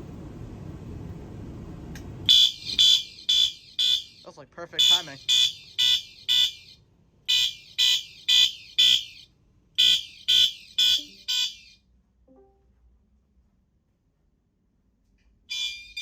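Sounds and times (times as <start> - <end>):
fire alarm horn blasts: 2.3 - 11.8, 15.5 - 16.0.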